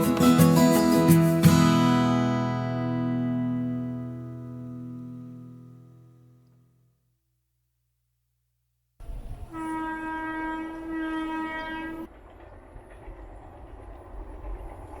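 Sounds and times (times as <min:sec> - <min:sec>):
train horn: 0:09.5 - 0:12.1.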